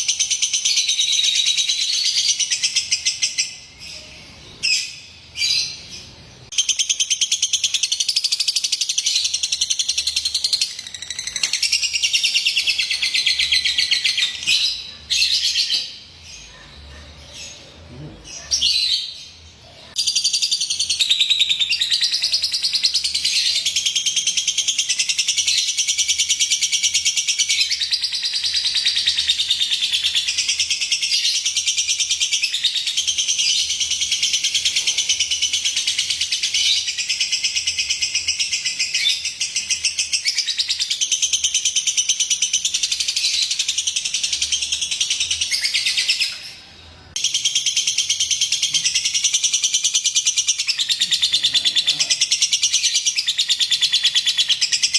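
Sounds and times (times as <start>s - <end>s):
lovebird chirping: 0.0s - 54.9s.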